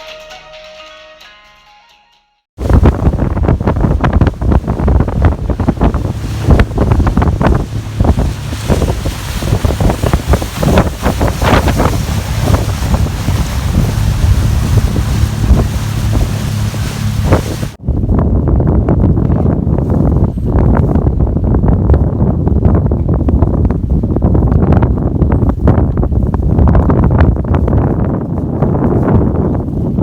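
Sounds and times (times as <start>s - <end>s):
waves splashing against hull: 2.6s - 17.8s
boat engine running: 2.6s - 18.0s
wind buffeting microphone: 2.6s - 30.0s.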